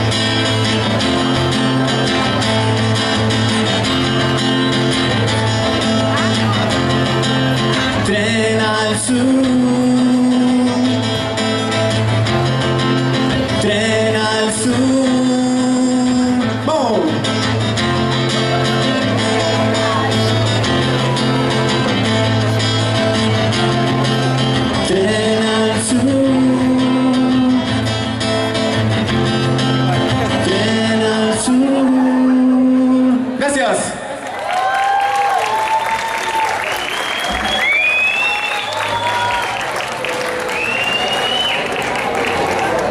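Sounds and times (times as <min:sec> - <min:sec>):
rock band playing: 0:00.0 - 0:31.3
sliding guitar notes: 0:00.0 - 0:33.4
electric guitar: 0:00.0 - 0:34.0.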